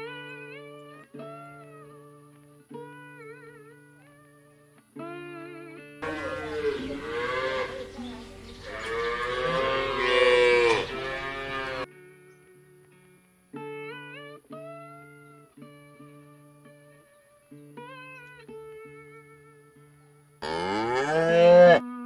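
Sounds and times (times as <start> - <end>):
plucked guitar music: 0.0 - 20.4
cow mooing: 6.0 - 11.9, 20.4 - 21.8.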